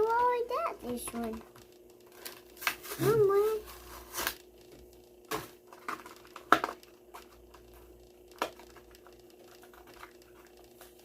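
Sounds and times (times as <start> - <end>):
plastic crackling: 0.0 - 11.0
cardboard tearing: 2.2 - 4.4.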